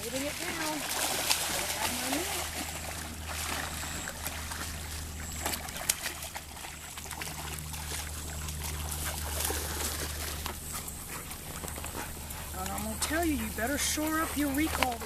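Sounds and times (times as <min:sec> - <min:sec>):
water splashing and trickling: 0:00.0 - 0:15.0.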